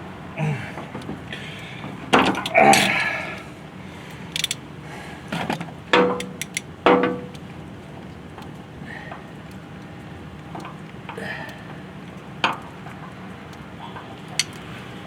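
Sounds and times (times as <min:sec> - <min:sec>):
wrench clicking and knocking on metal: 0:04.4 - 0:04.6, 0:06.0 - 0:07.4.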